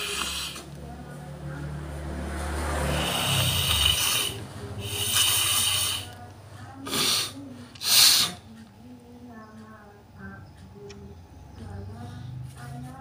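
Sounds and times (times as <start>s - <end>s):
person breathing raspily: 0.0s - 0.7s, 2.7s - 6.2s, 6.8s - 8.4s.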